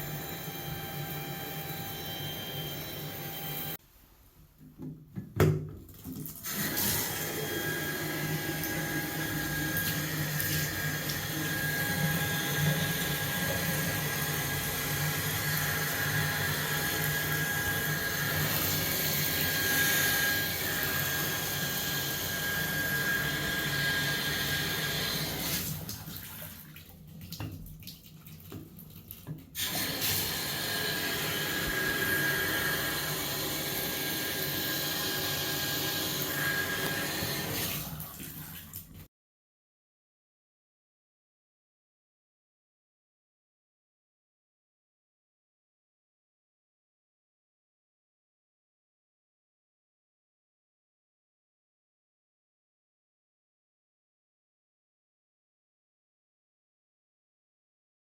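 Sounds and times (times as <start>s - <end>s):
high-pitched tone from shower valve: 0.0s - 3.8s
shower water running: 6.2s - 39.1s.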